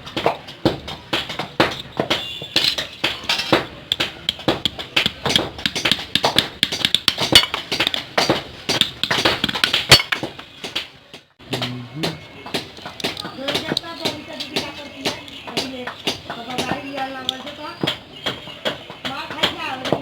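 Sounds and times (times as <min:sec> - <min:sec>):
metal taps and clinks: 0:06.9 - 0:08.0.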